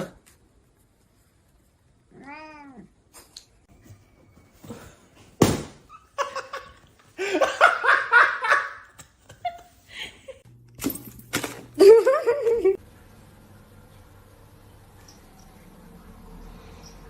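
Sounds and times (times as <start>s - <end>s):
cat meowing: 2.1s - 2.9s.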